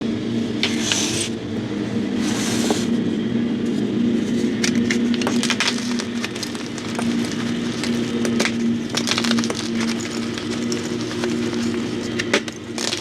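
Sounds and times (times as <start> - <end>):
lawn mower engine running: 0.4 - 13.0
chalk being crushed: 4.3 - 13.0.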